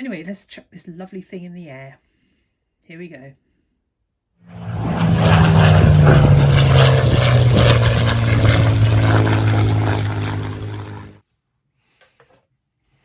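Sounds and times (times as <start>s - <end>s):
model plane motor buzzing: 4.5s - 11.2s.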